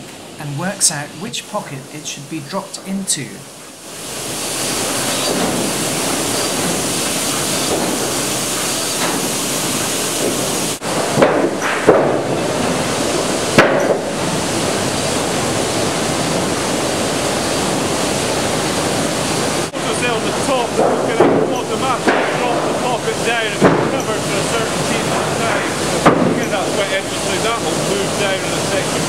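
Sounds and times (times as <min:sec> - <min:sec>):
sawmill sorting line running: 0:00.0 - 0:29.0
wooden planks knocking: 0:11.2 - 0:12.2, 0:20.8 - 0:22.6, 0:23.6 - 0:24.1, 0:26.0 - 0:26.5.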